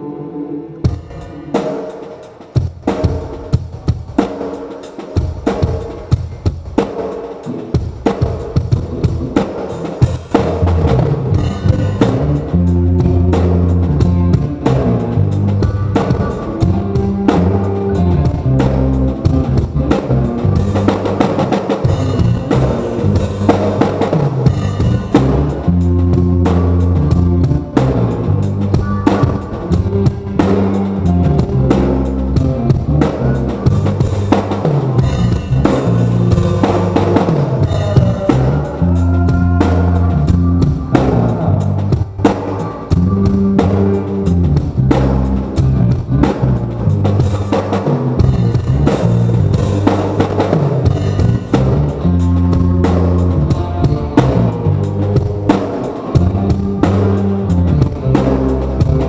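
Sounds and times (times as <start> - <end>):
rock band playing live: 0.8 - 59.0
drum kit kick and snare: 0.9 - 59.0.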